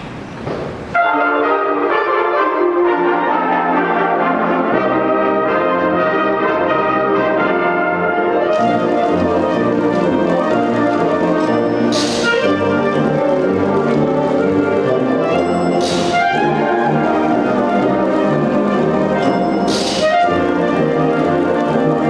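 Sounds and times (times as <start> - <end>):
wind band playing: 1.0 - 22.0
ambient hiss: 10.1 - 12.9, 19.3 - 20.8.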